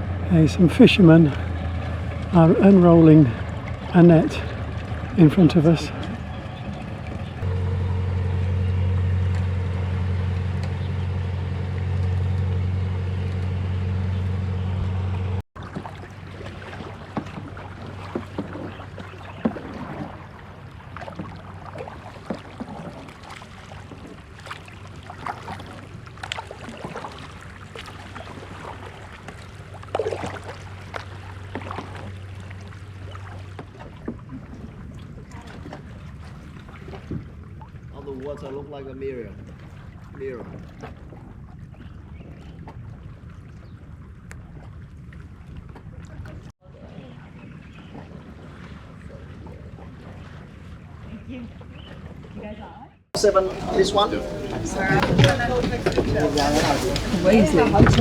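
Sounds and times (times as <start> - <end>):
boat engine humming: 0.0 - 37.9, 53.2 - 58.0
short knocks: 53.2 - 58.0.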